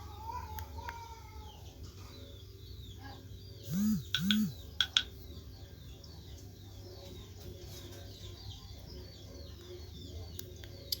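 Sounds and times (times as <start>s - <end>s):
faint bird chirping: 0.0s - 11.0s
sharp click: 3.7s - 5.1s.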